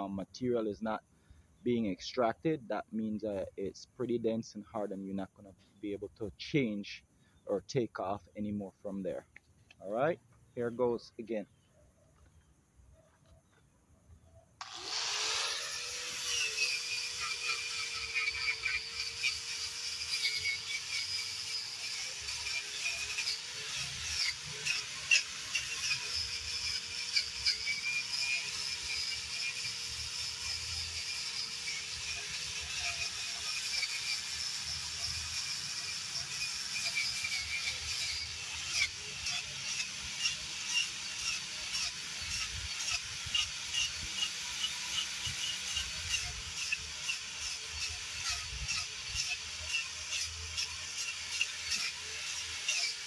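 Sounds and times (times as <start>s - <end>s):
angle grinder whining: 14.6s - 53.0s.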